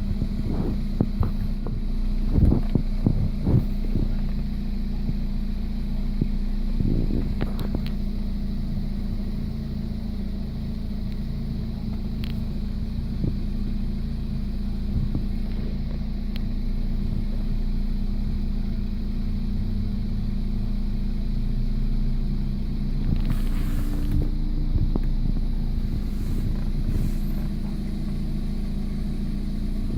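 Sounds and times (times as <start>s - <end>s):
car engine running: 0.0s - 29.9s
brief hiss: 23.2s - 24.4s, 25.8s - 27.7s.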